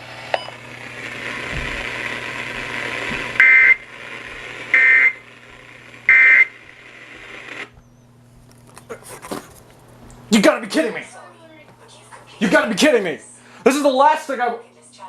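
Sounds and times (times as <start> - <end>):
radio hiss: 0.0 - 7.8
shrill alert data tones: 3.4 - 3.8, 4.7 - 5.2, 6.1 - 6.6.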